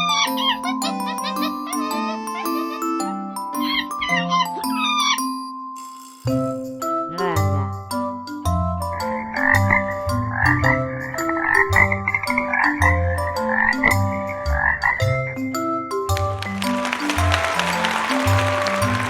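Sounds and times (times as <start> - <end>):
marimba children's tune: 0.0 - 19.0.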